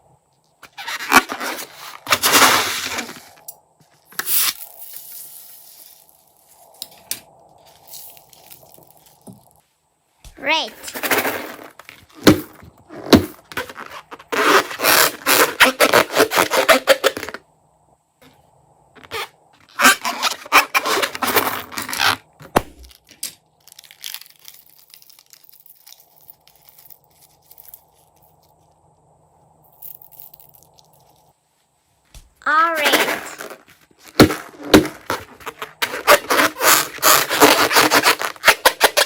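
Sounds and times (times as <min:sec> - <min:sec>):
crunchy slime crackling and popping: 0:22.6 - 0:28.0.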